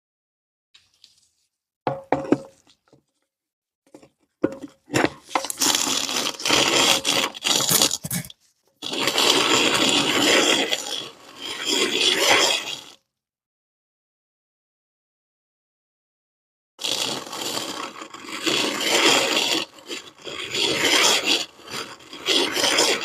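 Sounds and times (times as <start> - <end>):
grinder knocks: 1.9 - 2.5
sand scraping and crunching in grinder: 5.2 - 13.0, 16.8 - 23.0.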